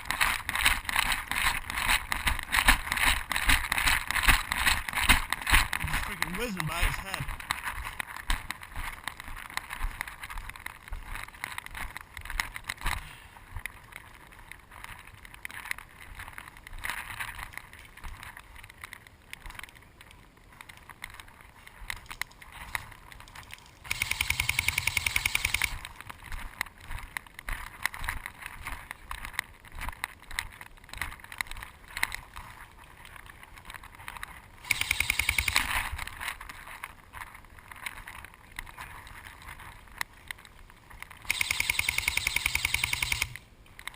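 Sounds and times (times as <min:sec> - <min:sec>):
airsoft gun full-auto bursts: 0:23.9 - 0:25.8, 0:34.6 - 0:35.9, 0:41.3 - 0:43.4.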